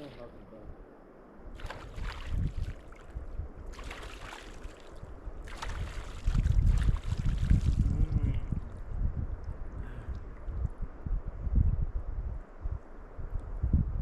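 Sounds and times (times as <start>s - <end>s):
river water splashing: 1.5s - 8.0s.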